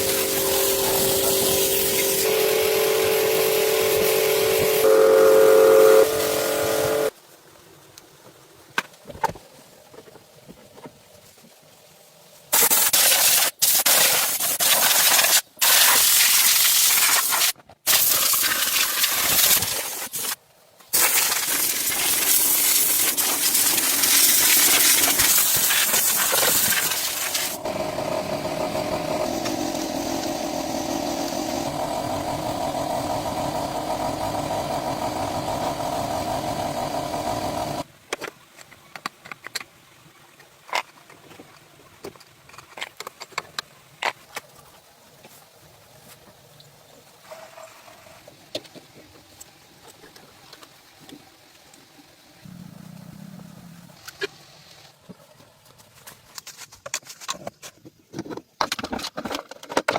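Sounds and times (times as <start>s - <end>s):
loud hiss of spray: 0.0s - 7.1s, 12.5s - 37.9s.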